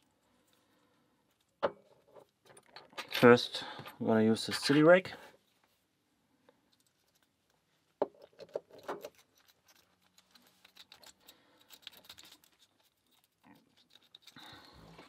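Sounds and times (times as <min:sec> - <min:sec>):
lock pick scraping and clicking: 0:08.1 - 0:14.4.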